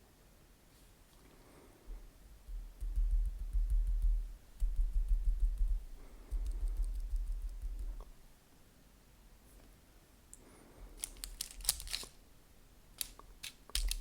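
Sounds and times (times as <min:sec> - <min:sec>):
soft muffled eating thumps: 0:01.9 - 0:08.1
sticky clicks: 0:11.0 - 0:12.1, 0:13.0 - 0:14.0.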